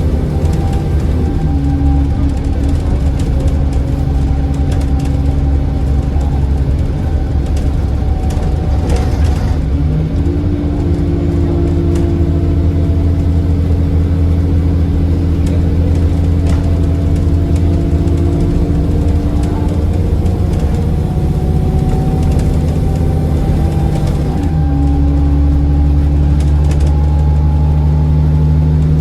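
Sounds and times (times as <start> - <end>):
turbocharger whistling: 0.0 - 2.4, 16.2 - 26.2
bus diesel engine accelerating: 0.0 - 29.0.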